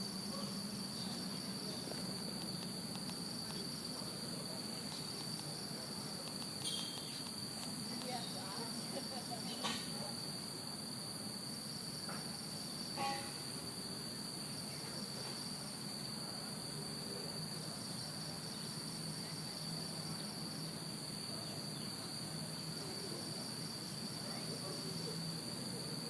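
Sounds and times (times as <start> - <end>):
insect chorus: 0.0 - 26.0.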